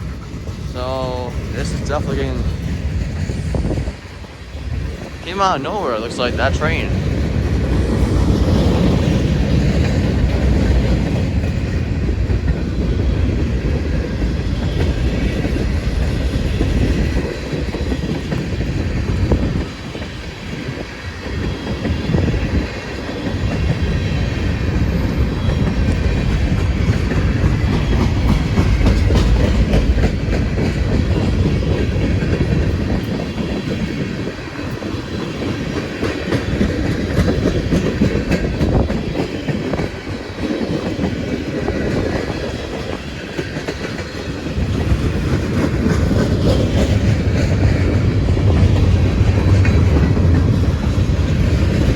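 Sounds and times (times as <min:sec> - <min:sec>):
freight train rumbling past: 0:00.0 - 0:51.9
wheels clicking over rail joints: 0:06.9 - 0:51.9.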